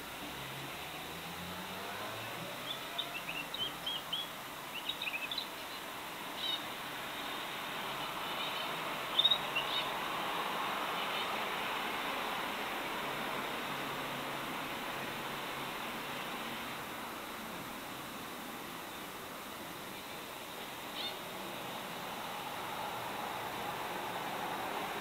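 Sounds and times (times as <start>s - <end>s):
steady background hiss: 0.0s - 25.0s
pet birds chirping: 2.6s - 5.8s, 8.3s - 9.9s.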